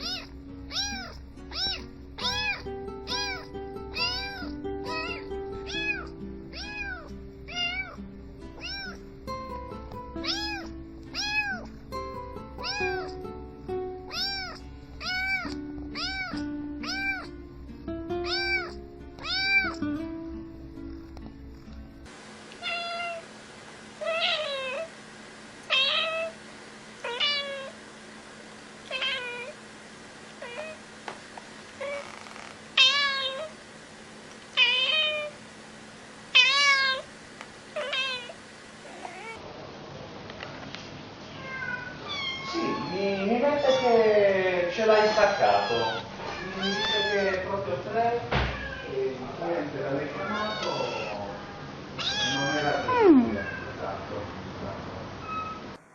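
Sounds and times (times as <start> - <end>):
cat meowing: 0.0 - 8.0, 8.6 - 9.0, 10.2 - 11.8, 12.6 - 13.2, 14.1 - 17.3, 18.2 - 19.8, 22.6 - 23.2, 24.0 - 24.9, 25.7 - 26.4, 27.0 - 27.8, 28.9 - 29.6, 30.4 - 30.8, 31.8 - 33.6, 34.6 - 35.4, 36.3 - 37.1, 37.8 - 39.4, 41.3 - 47.5, 48.4 - 49.1, 50.0 - 53.8
higher-pitched cat meows: 0.0 - 8.0, 8.6 - 9.0, 10.2 - 11.7, 12.6 - 13.1, 14.1 - 17.3, 18.2 - 19.8, 22.6 - 23.2, 24.0 - 24.9, 25.7 - 26.3, 28.9 - 29.6, 32.8 - 33.6, 36.4 - 37.1, 37.8 - 38.4, 41.3 - 44.0, 44.9 - 47.4, 48.4 - 49.0, 50.2 - 51.2, 52.0 - 53.7
background music: 0.3 - 22.1.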